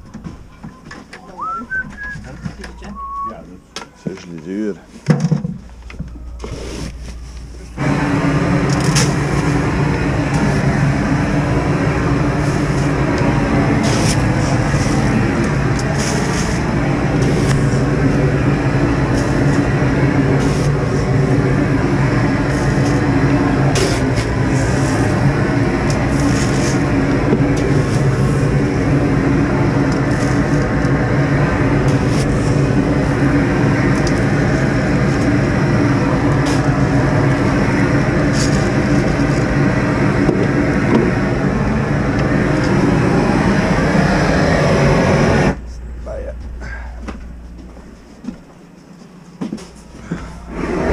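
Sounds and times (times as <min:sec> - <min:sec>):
vehicle engine running: 0:05.6 - 0:48.8, 0:49.5 - 0:50.9.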